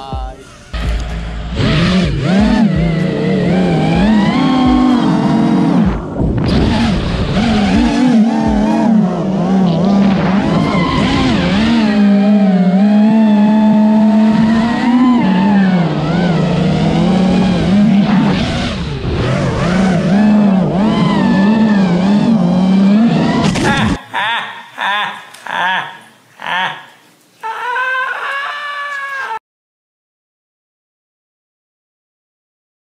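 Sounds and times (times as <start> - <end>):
quadcopter motors buzzing whine: 1.5 - 23.9.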